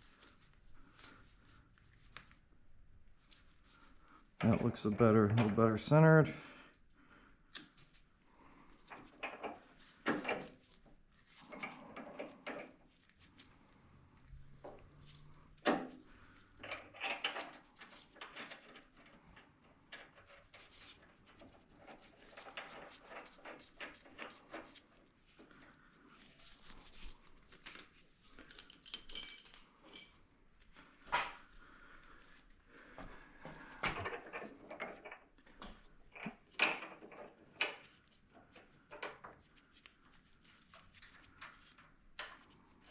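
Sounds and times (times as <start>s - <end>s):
metallic clinks of hand tools: 28.8s - 30.2s.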